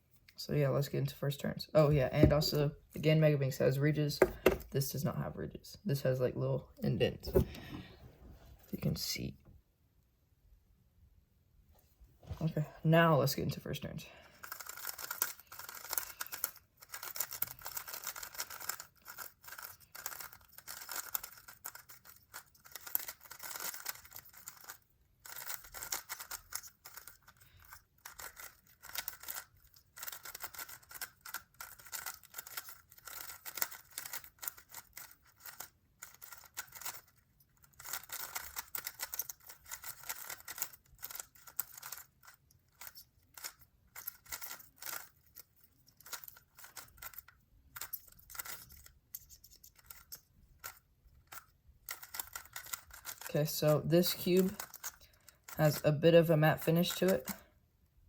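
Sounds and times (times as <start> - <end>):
plastic puzzle cube clicking: 14.4 - 53.3, 54.4 - 55.6.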